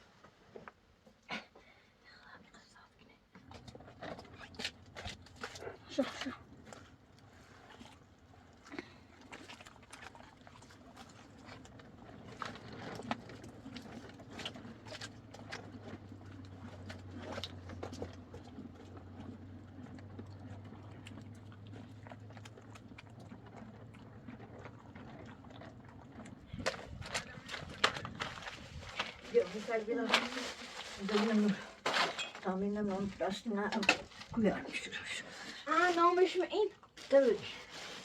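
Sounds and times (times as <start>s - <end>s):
hooves clip-clopping on hard ground: 11.6s - 31.7s.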